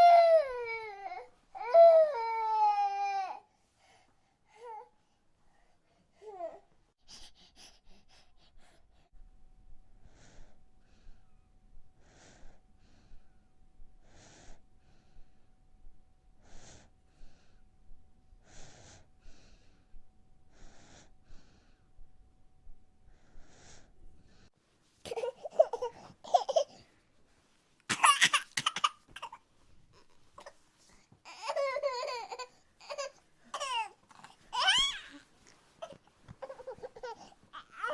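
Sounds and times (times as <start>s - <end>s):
baby breathing: 7.0s - 9.1s
baby laughing and babbling: 25.1s - 26.8s, 31.3s - 35.2s, 35.8s - 37.9s.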